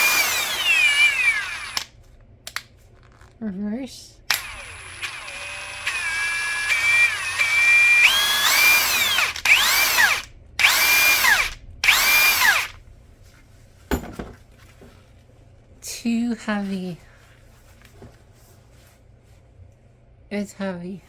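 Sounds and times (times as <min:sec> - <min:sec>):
impact wrench motor whine: 0:00.0 - 0:01.9, 0:04.3 - 0:12.8
impact wrench spinning up and down: 0:00.0 - 0:01.9, 0:04.3 - 0:12.8.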